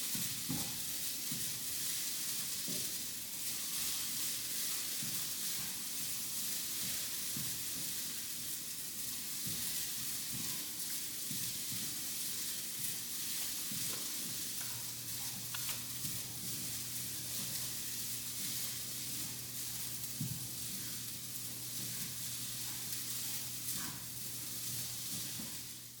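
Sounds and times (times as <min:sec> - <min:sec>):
meat sizzling: 0:00.0 - 0:26.0.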